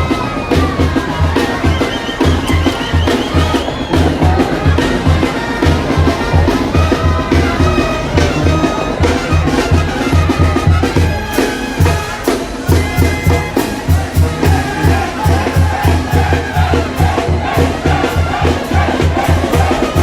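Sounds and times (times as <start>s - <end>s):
loud brass band music: 0.0s - 20.0s
fast bass beat: 12.7s - 20.0s.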